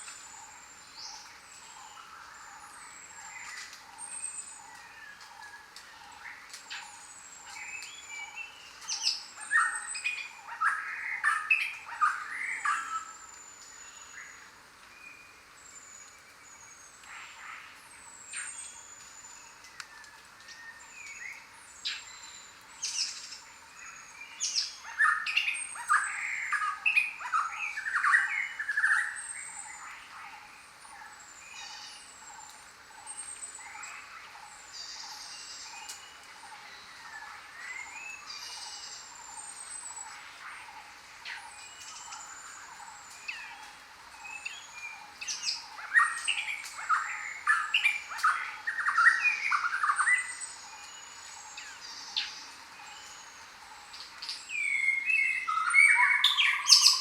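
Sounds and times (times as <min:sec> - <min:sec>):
birds chirping: 0:00.0 - 0:57.0.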